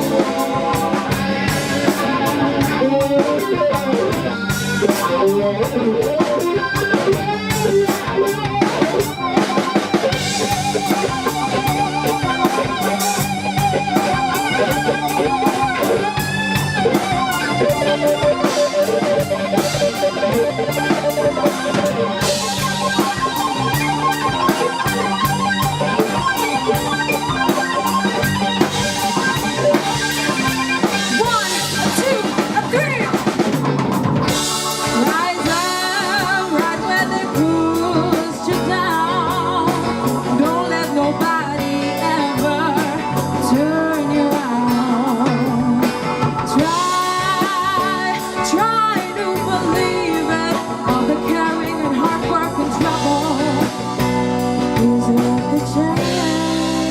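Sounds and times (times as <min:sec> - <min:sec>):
drum kit beat: 0:00.0 - 0:56.9
lead guitar bending pitch: 0:00.0 - 0:56.9
live band playing: 0:00.0 - 0:56.9.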